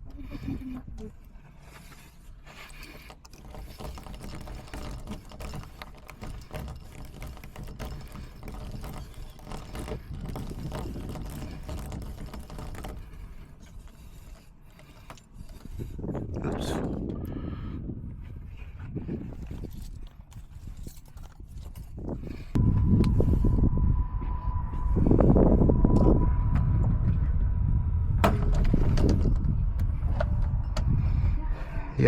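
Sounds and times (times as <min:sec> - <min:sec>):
lock pick clicking and scraping: 0:01.7 - 0:17.2, 0:19.3 - 0:22.6
low rumble: 0:22.5 - 0:32.0.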